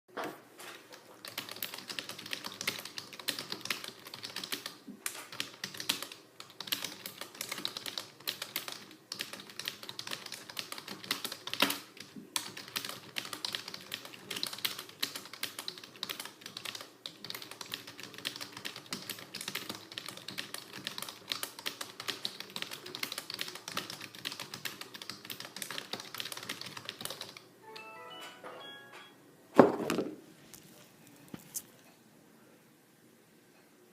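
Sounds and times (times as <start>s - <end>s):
typing on computer keyboard: 0.9s - 27.4s
loud knock: 29.6s - 30.2s.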